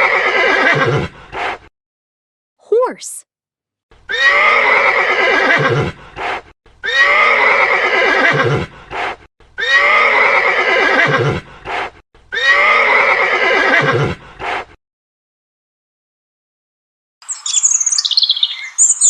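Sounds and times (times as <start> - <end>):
horse neighing: 0.0 - 1.1, 4.1 - 6.0, 6.8 - 8.7, 9.6 - 11.4, 12.3 - 14.2.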